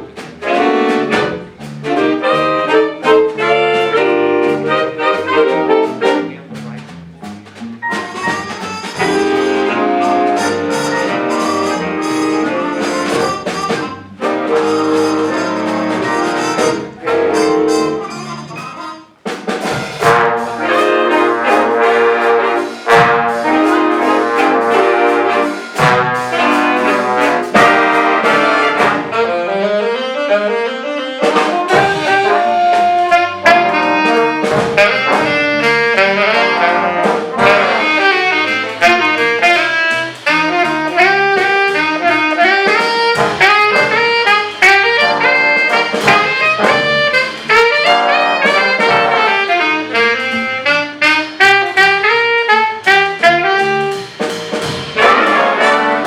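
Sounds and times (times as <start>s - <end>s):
jazz band playing swing: 0.0s - 56.0s.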